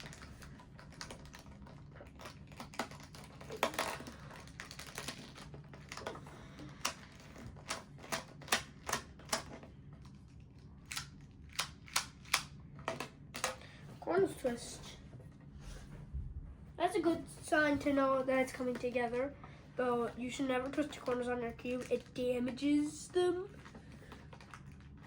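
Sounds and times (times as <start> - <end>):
plastic puzzle cube clicking: 10.9 - 13.6.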